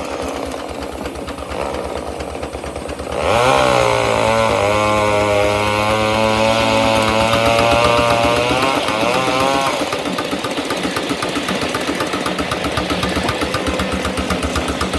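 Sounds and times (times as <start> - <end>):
steam engine machinery beating: 0.0 - 14.9.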